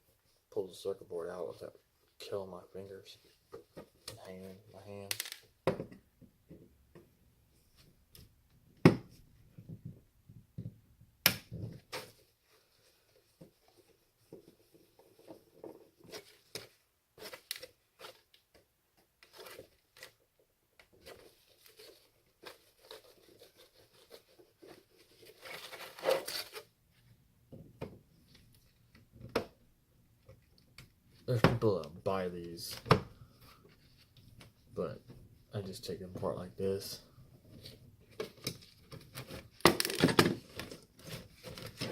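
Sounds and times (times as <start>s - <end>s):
clicks and knocks of plastic parts: 5.0s - 7.0s.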